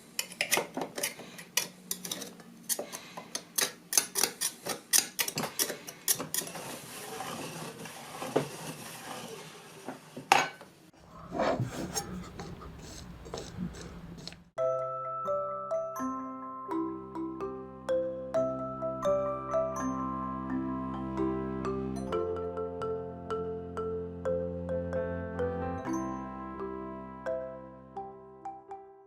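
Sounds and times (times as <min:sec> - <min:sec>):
meat grinder grinding: 0:05.2 - 0:09.9.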